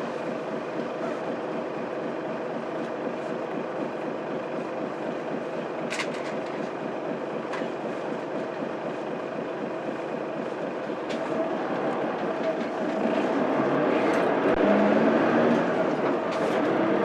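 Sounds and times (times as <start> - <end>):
bus diesel engine: 0.0 - 17.0
rattles and clicks: 5.8 - 6.7
road noise: 10.5 - 17.0.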